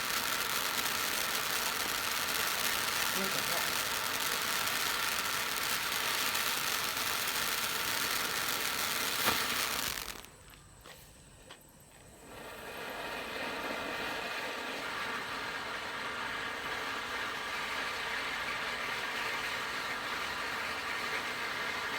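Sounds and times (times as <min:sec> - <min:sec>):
sharp crack: 0:00.0 - 0:10.4
firework fountains hissing: 0:00.0 - 0:10.5, 0:12.1 - 0:21.9
small pops: 0:00.0 - 0:10.6.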